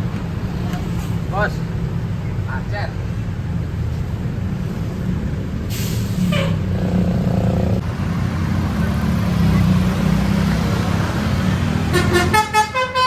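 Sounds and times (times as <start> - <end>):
diesel engine droning: 3.4 - 13.0
air brake hiss: 5.7 - 6.6
bus horn: 6.3 - 6.7, 11.8 - 13.0.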